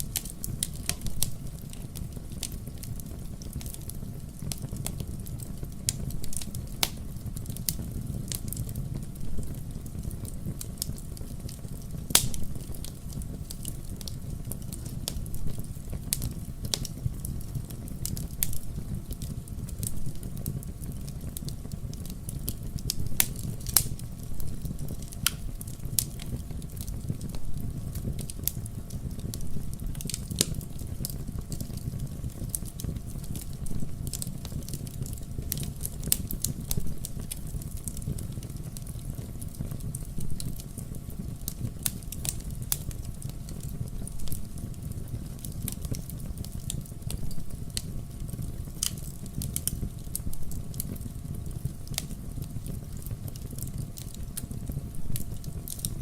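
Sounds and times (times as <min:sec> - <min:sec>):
fire crackling and popping: 0:00.0 - 0:56.0
fire flames rumbling: 0:00.0 - 0:56.0.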